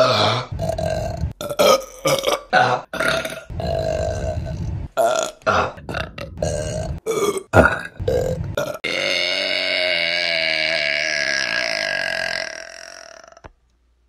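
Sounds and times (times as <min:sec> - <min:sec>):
women burping loudly: 0:05.1 - 0:13.5.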